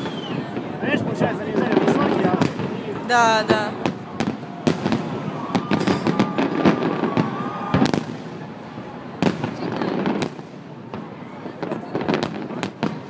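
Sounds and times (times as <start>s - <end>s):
thin steady whistle: 0.0s - 0.6s
firework bangs and crackles: 0.0s - 13.0s.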